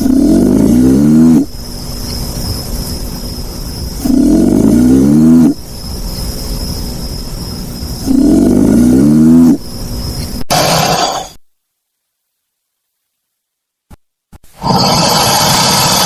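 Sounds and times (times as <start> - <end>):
alligator bellow: 0.0 - 1.5, 4.0 - 5.6, 8.0 - 9.6
steady low rumble: 0.0 - 9.0.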